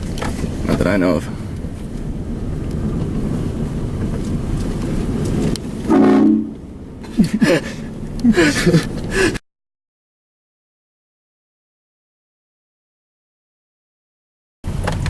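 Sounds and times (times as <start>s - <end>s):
vehicle hum: 0.0s - 9.4s, 14.6s - 15.0s
train air horn blast: 5.9s - 6.6s.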